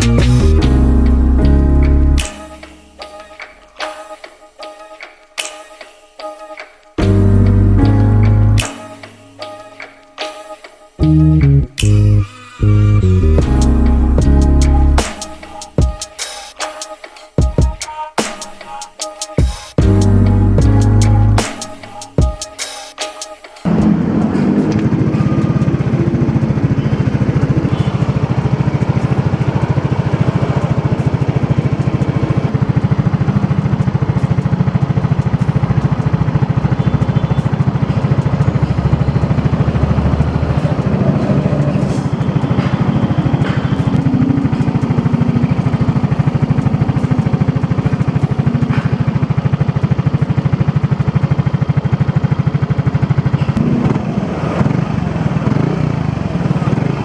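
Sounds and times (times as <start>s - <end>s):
scooter engine idling: 23.7s - 57.0s.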